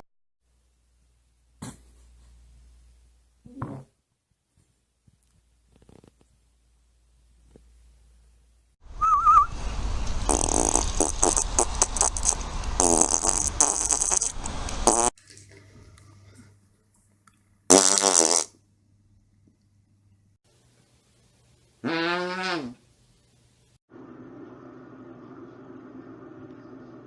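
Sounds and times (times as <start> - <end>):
farts: 10.3 - 15.2, 17.7 - 18.6.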